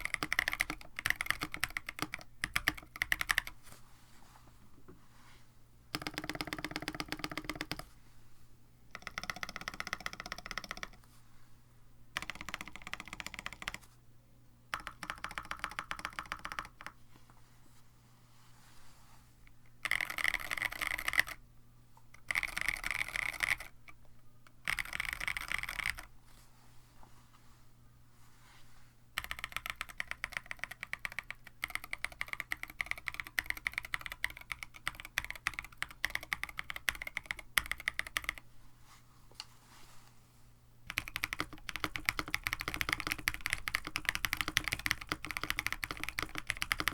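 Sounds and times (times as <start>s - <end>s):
mechanical keyboard typing: 0.0s - 3.6s, 5.9s - 7.9s, 8.9s - 11.0s, 12.2s - 13.8s, 14.7s - 16.9s, 19.8s - 21.4s, 22.2s - 24.0s, 24.6s - 26.1s, 29.2s - 38.4s, 40.9s - 46.9s.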